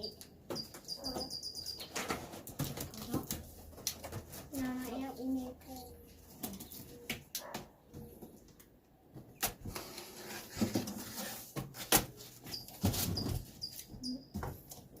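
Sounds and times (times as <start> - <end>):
cardboard and packing rustling: 2.0 - 7.1, 9.1 - 15.0
short high squeaks: 12.4 - 14.3.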